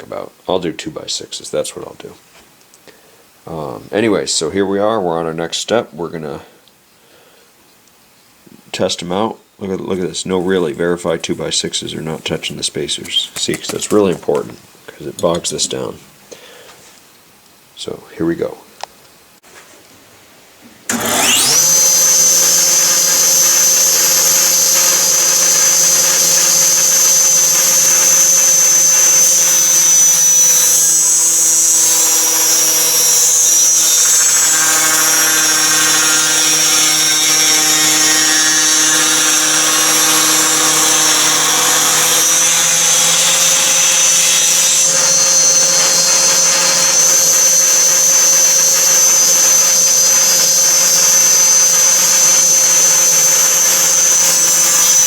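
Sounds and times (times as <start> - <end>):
wood shaper whining: 12.0 - 14.6, 20.9 - 55.0.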